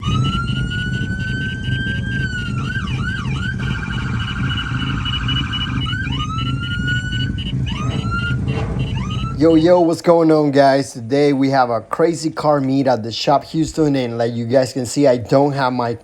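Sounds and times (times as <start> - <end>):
pulsing beep tone: 0.0 - 9.6
low rumble: 0.0 - 12.9
emergency vehicle siren: 0.0 - 13.8.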